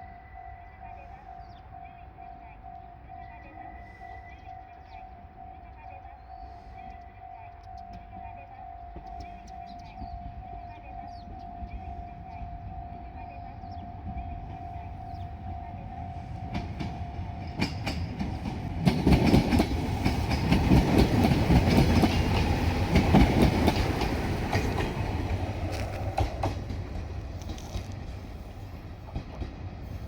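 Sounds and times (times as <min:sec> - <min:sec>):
diesel railcar passing: 0:00.0 - 0:30.0
wheels clacking over rail joints: 0:16.2 - 0:28.2.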